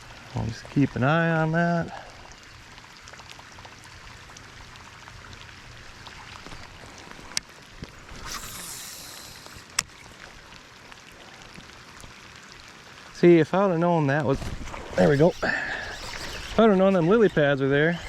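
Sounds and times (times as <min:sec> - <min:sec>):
river water ambience: 0:00.0 - 0:18.0
brief hissing: 0:08.1 - 0:09.7, 0:14.4 - 0:16.9.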